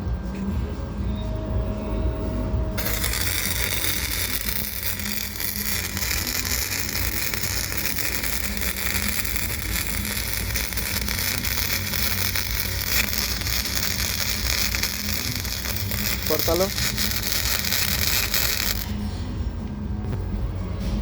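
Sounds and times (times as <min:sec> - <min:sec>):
sharp crack: 0:02.8 - 0:18.9
welding arc crackling and hissing: 0:02.8 - 0:19.0.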